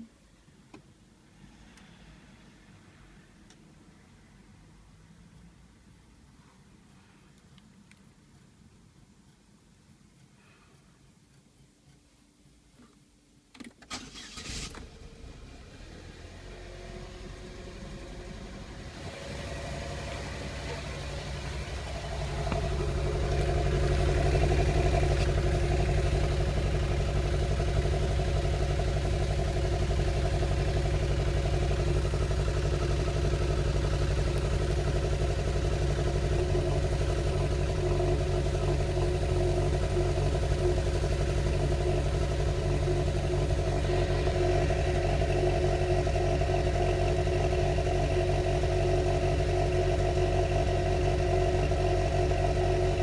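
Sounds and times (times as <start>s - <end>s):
engine running: 13.9s - 53.0s.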